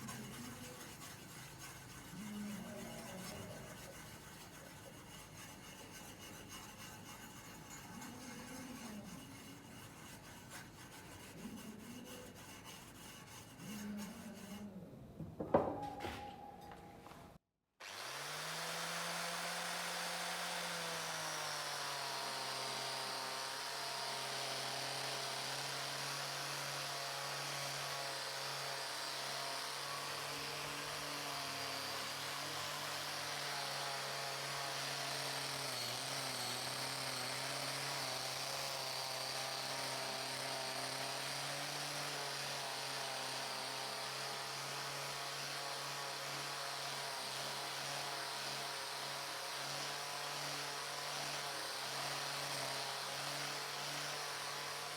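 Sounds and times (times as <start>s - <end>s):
power tool motor humming: 17.8s - 54.9s.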